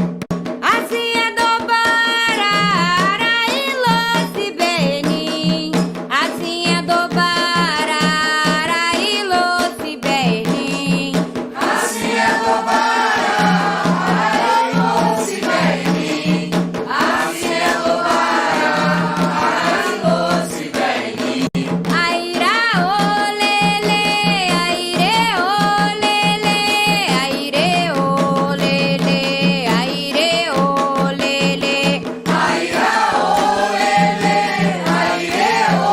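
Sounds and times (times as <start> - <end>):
steady drum beat: 0.0 - 35.9
voices singing: 10.4 - 35.9.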